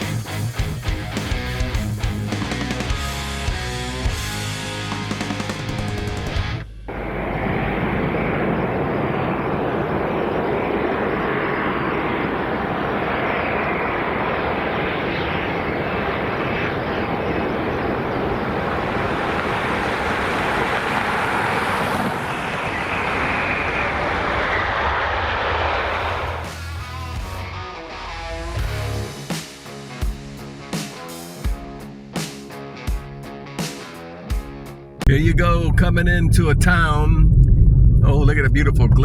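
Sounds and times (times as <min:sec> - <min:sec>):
aircraft engine running: 0:00.0 - 0:28.0.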